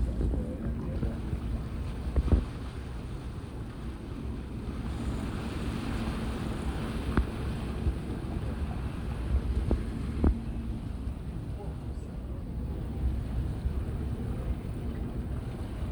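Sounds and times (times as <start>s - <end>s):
faint hum: 0.0s - 15.9s
sea and boat engine rumble: 0.0s - 15.9s
wind buffeting microphone: 0.0s - 15.9s.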